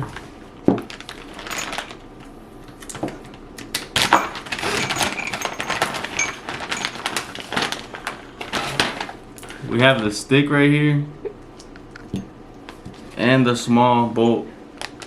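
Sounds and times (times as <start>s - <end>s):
small parts clicking and clattering: 4.0s - 10.0s.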